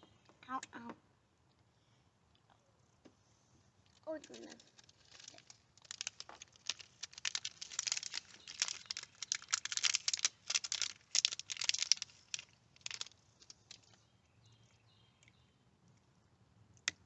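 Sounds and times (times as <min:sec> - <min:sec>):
plastic parts clicking and crackling: 0:03.8 - 0:14.0.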